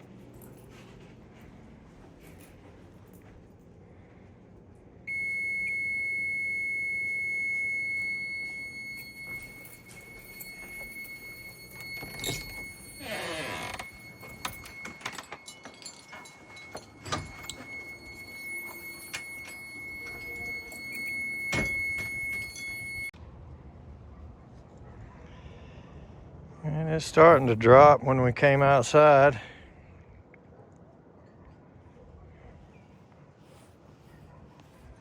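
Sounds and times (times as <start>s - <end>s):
continuous high-pitched alarm tone: 5.1s - 23.2s.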